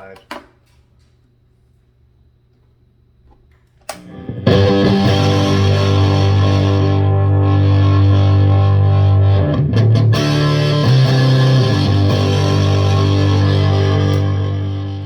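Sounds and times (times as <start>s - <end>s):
distorted electric guitar chords: 4.0s - 15.0s.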